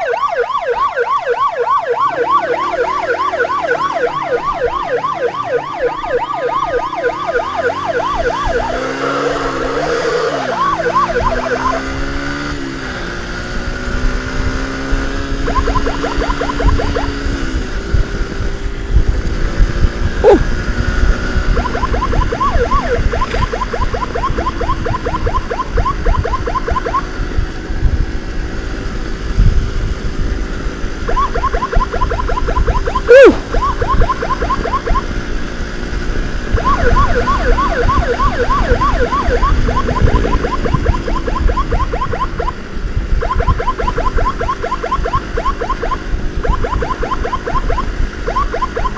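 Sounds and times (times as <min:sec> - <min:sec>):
emergency siren yelping: 0:00.0 - 0:12.4, 0:14.6 - 0:17.3, 0:20.2 - 0:20.4, 0:21.0 - 0:27.4, 0:30.9 - 0:48.9
motorcycle engine: 0:00.2 - 0:48.9
wind noise: 0:16.6 - 0:28.4, 0:29.0 - 0:34.5, 0:36.1 - 0:44.3.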